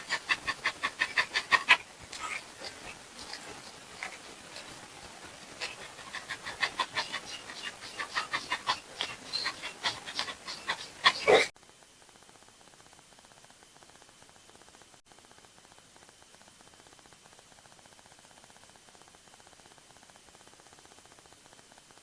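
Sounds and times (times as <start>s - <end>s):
animal panting rapidly: 0.0s - 11.5s.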